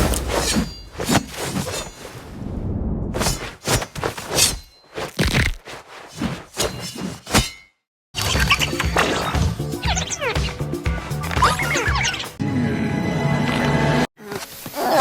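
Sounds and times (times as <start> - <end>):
low rumble: 2.2 - 3.2.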